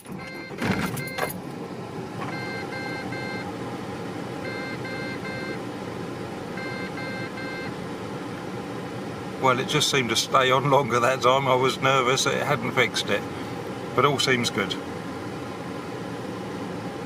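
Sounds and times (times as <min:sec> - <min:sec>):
dashboard warning chime beeps: 0:00.0 - 0:01.4, 0:02.3 - 0:03.5, 0:04.4 - 0:05.6, 0:06.6 - 0:07.8
car running hum: 0:00.0 - 0:17.0.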